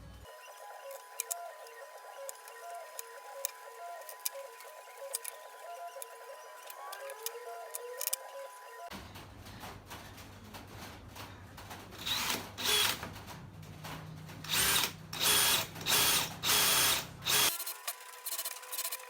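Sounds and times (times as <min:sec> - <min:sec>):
electric drill whining: 0:12.1 - 0:13.0, 0:14.5 - 0:19.0.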